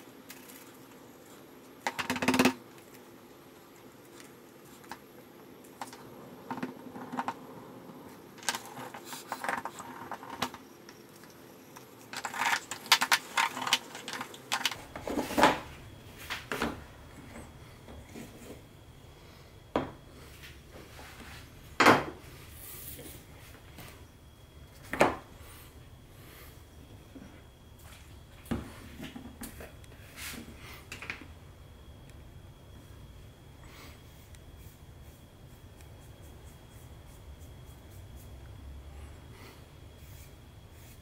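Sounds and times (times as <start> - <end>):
small hard objects clinking: 11.3 - 14.8.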